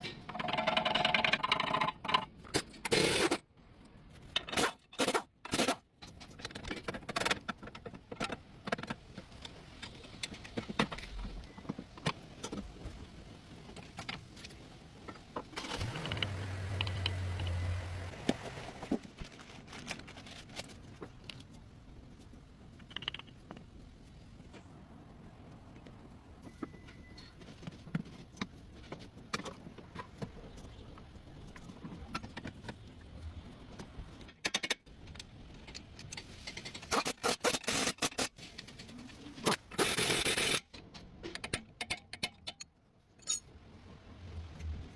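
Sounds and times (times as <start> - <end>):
metal tools clinking and scraping: 43.2 - 43.5.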